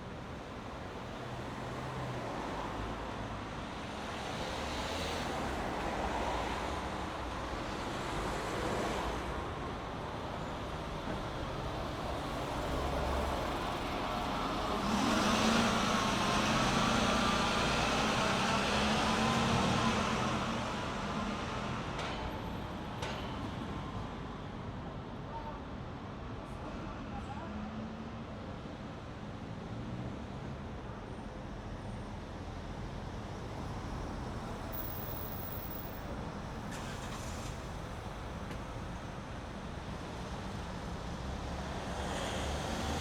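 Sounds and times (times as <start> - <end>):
cars passing: 41.0 - 43.0.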